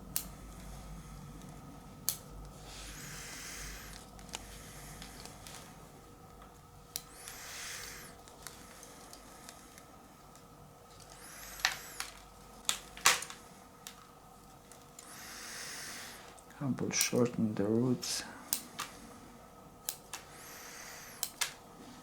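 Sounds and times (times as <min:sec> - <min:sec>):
pruning scissors snipping roots: 0:19.8 - 0:20.2.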